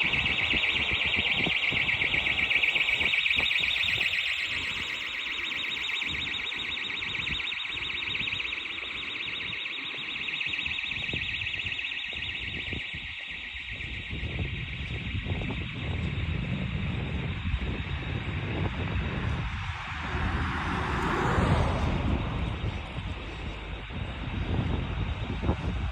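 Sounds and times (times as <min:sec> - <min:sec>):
fire alarm pulsing tone: 0:00.0 - 0:25.9
low rumble: 0:18.3 - 0:25.9.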